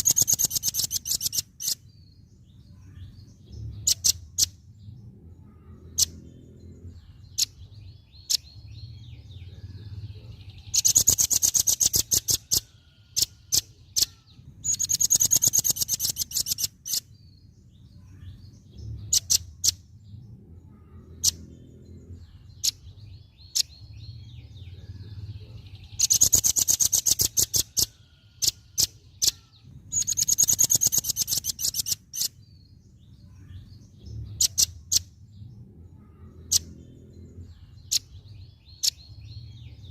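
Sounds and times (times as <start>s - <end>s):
bird trilling: 0.0s - 1.9s, 3.7s - 4.6s, 10.6s - 17.2s, 20.8s - 32.5s, 33.3s - 35.2s
faint low hum: 0.0s - 16.4s, 17.0s - 26.5s, 32.4s - 39.9s
bird chirping: 0.0s - 39.9s.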